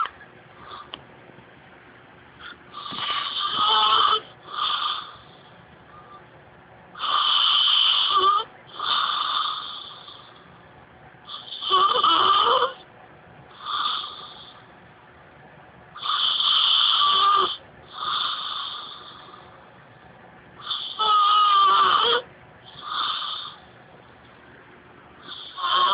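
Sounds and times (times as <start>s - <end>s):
woman snoring loudly: 2.7s - 5.2s, 7.0s - 10.2s, 11.3s - 12.8s, 13.5s - 14.4s, 16.0s - 19.4s, 20.6s - 23.6s, 25.2s - 25.9s.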